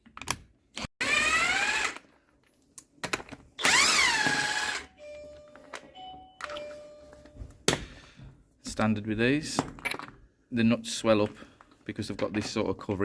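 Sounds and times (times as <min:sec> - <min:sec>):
air impact gun whining: 0:03.6 - 0:04.9.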